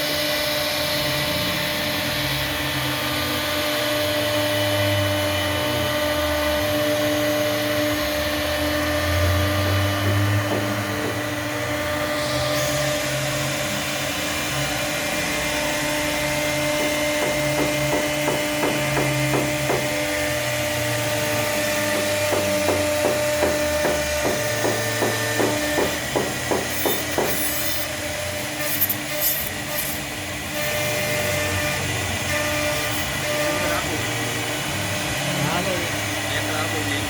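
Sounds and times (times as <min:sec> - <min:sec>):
router spindle whining: 0:00.0 - 0:37.0
short scratchy bursts: 0:26.7 - 0:31.2.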